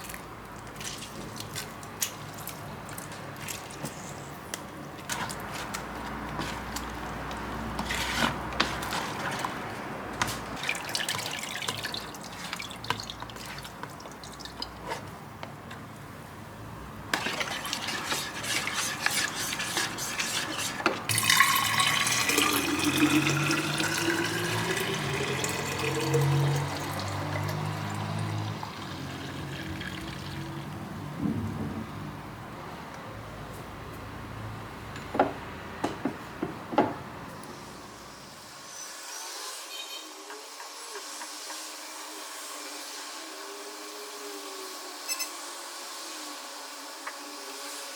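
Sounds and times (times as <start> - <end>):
water filling a container: 6.1 - 14.9, 17.2 - 30.9.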